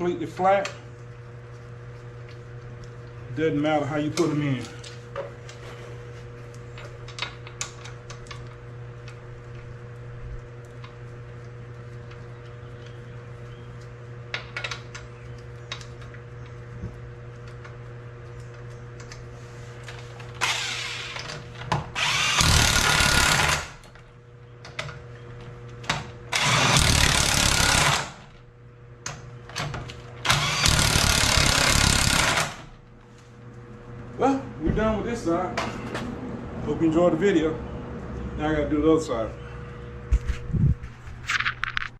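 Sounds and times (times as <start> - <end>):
power tool running bolts in: 20.2 - 23.9, 26.3 - 28.4, 30.2 - 32.8.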